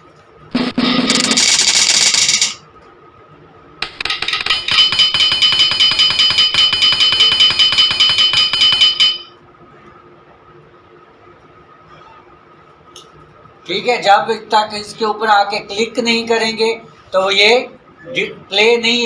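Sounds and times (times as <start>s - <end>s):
metallic clinking with ringing tone: 3.8s - 9.3s.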